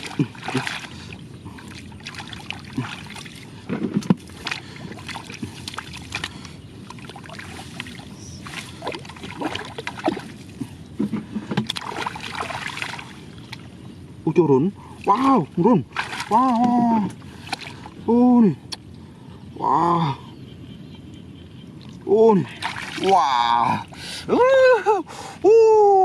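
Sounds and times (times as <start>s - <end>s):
sharp water splashes: 0.0s - 10.6s, 11.6s - 13.6s, 15.0s - 17.9s, 22.5s - 23.5s
shallow water sloshing: 0.0s - 13.9s, 14.7s - 18.1s, 21.8s - 24.2s.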